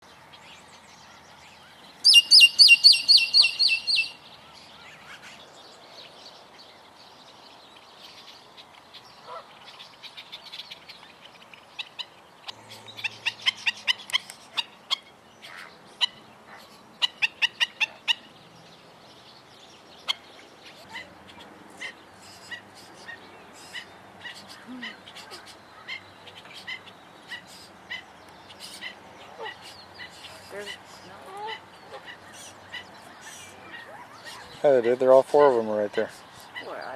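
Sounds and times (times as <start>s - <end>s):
birds calling sharp high notes: 2.0s - 4.6s.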